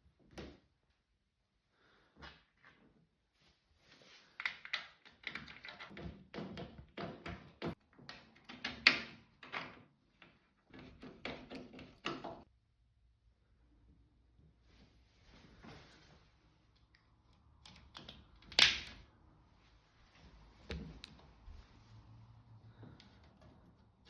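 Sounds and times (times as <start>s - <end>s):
clicks and knocks of handled parts: 16.7s - 19.1s.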